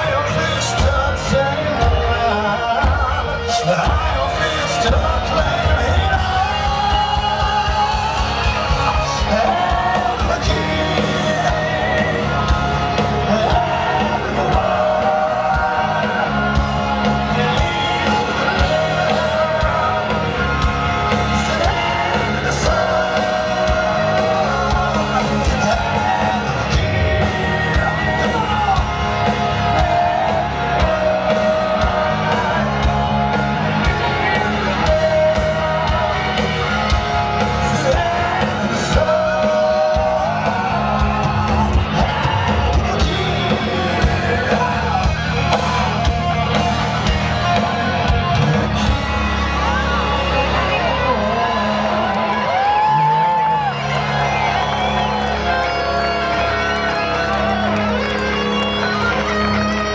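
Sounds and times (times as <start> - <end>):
person singing: 0.0 - 46.7
crowd shouting: 0.0 - 59.9
live heavy metal music: 0.0 - 59.9
melodic guitar riff: 0.0 - 59.9.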